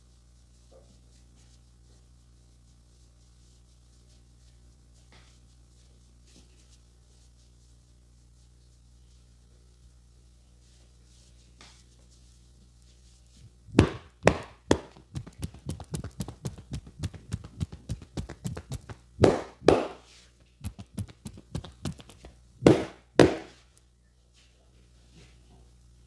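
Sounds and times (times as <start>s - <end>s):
light hand taps: 13.4s - 23.5s
hands slapping in head massage: 13.4s - 23.6s.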